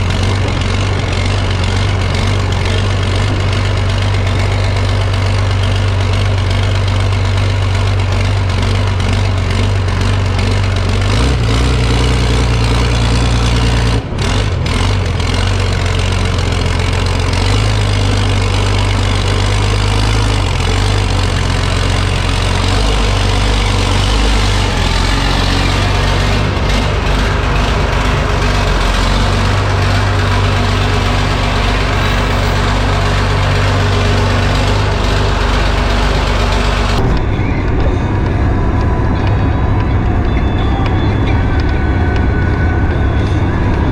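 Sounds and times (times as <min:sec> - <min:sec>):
large engine running: 0:00.0 - 0:43.9.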